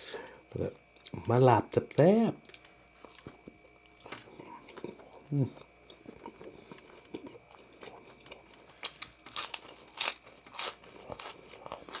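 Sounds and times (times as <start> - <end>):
person chewing crunchy food: 2.4 - 12.0.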